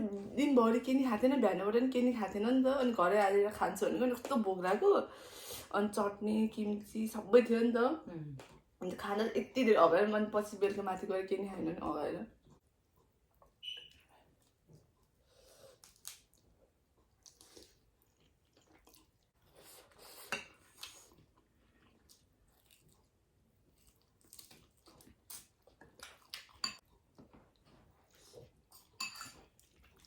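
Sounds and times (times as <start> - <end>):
chewing and biting food: 14.2 - 20.0, 20.7 - 30.0.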